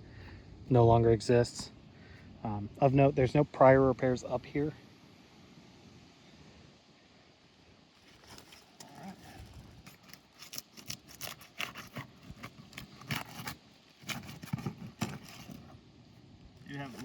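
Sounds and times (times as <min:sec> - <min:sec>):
roof shingle being pried up: 0:09.7 - 0:15.8.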